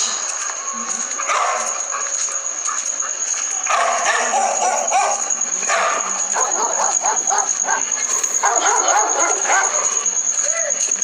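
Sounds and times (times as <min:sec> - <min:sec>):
steady high-pitched tone: 0:00.0 - 0:11.0
dog barking and yipping: 0:03.5 - 0:10.3.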